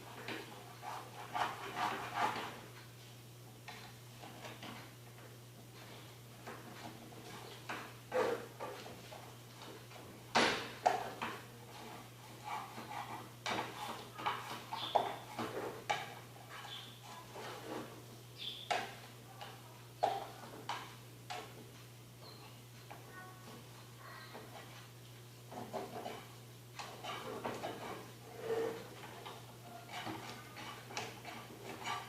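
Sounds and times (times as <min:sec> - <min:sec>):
low electrical hum: 0:00.0 - 0:32.0.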